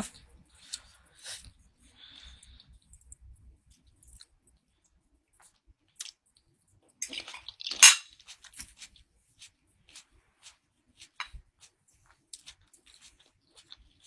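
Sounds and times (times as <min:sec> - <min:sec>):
tableware clatter: 0:07.7 - 0:08.1
tableware clicking and knocking: 0:07.8 - 0:08.1.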